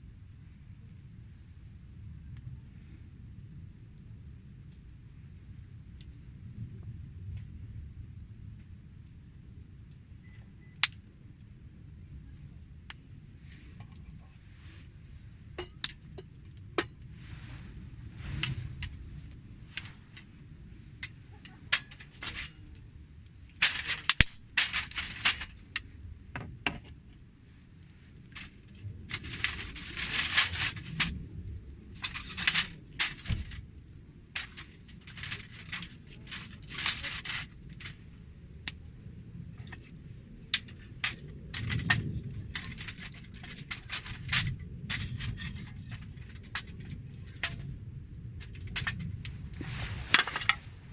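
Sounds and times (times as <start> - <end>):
campfire crackling and popping: 10.7 - 50.9
rustling clattering noise: 13.3 - 50.9.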